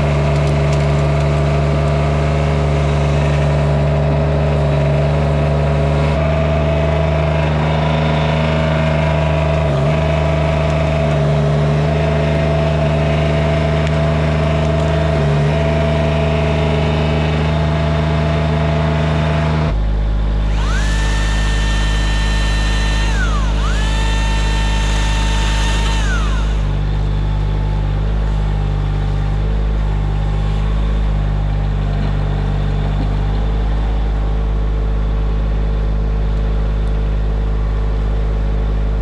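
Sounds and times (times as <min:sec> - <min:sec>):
engine running steadily: 0:19.8 - 0:38.2.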